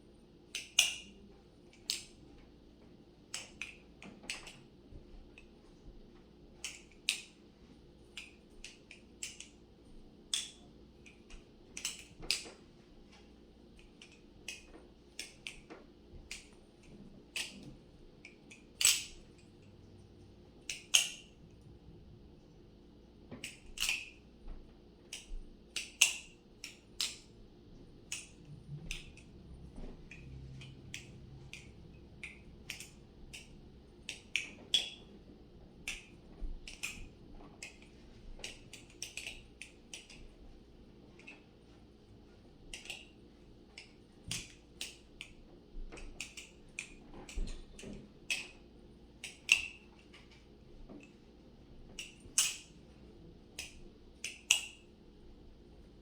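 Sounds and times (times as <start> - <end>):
butterfly knife clicking and clacking: 18.2 - 19.2, 20.6 - 21.4, 23.4 - 24.2, 25.1 - 27.3, 30.1 - 33.5, 37.6 - 40.2, 52.0 - 52.7, 53.6 - 54.8.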